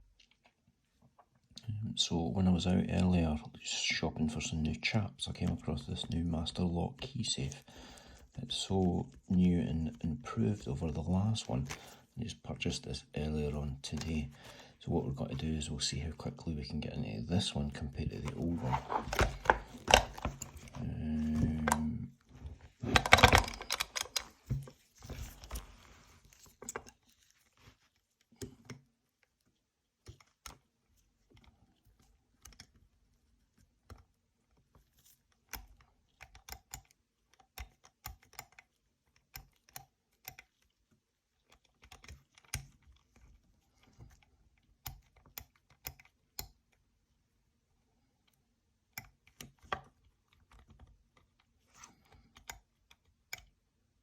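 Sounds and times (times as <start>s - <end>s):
lock mechanism clicks and scrapes: 18.3s - 20.8s, 22.8s - 27.4s.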